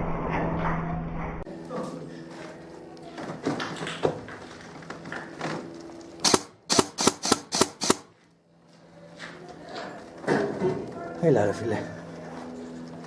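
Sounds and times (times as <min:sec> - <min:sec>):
airsoft gun shots: 0:06.2 - 0:08.1.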